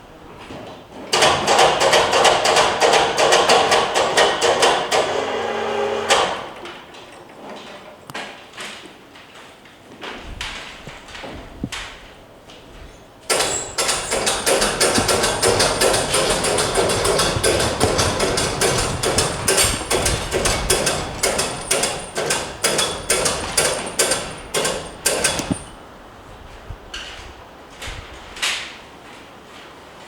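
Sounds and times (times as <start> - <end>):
rapid hammer blows: 13.3 - 25.8.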